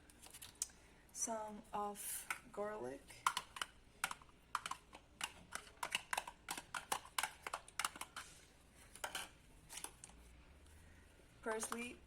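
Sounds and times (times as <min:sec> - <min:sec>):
utensil clicking against a dish: 0:03.2 - 0:08.2.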